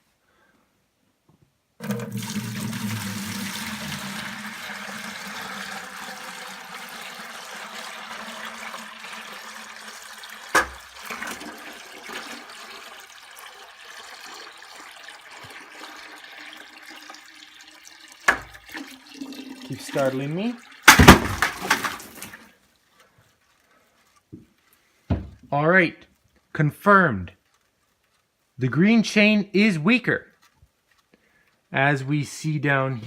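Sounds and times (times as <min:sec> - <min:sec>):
water running into plastic pail: 0:01.8 - 0:22.6.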